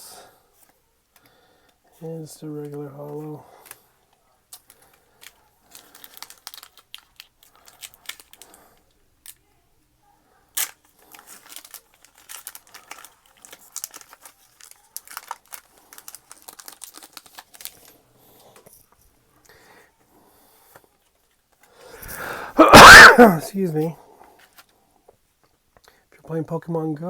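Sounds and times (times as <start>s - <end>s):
foil pack crinkling: 4.6s - 8.7s, 10.6s - 18.0s.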